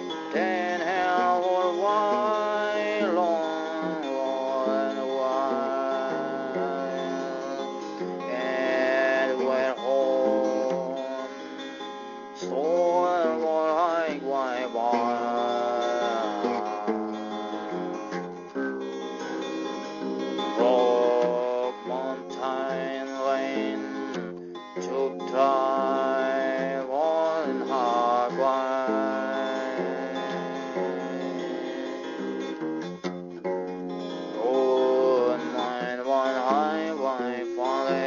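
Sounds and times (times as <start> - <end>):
person singing: 0.0 - 32.6, 34.0 - 38.0
acoustic guitar playing: 0.0 - 38.0.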